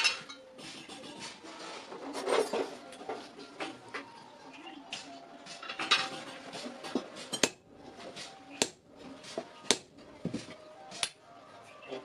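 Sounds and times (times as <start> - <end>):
metal scrape: 0.0 - 3.2
hammer striking metal: 7.3 - 7.6, 8.6 - 8.8, 9.6 - 9.9.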